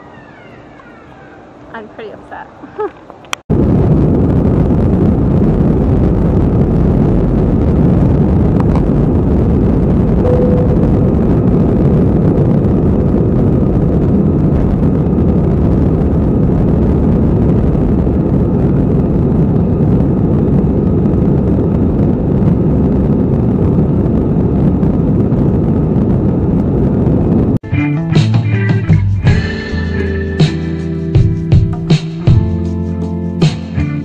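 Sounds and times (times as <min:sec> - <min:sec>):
moving vehicle rumble: 0:00.0 - 0:27.6
faint steady tone: 0:10.2 - 0:11.6.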